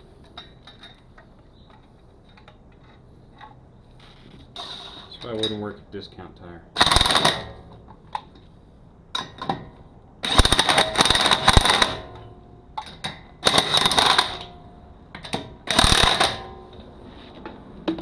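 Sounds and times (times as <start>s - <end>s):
impact wrench hammering: 6.8s - 7.7s, 10.2s - 14.5s, 15.2s - 16.6s.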